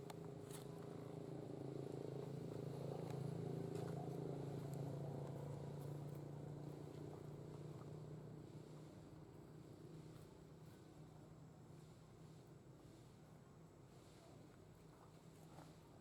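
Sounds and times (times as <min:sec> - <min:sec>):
faint low engine hum: 0:00.0 - 0:12.8.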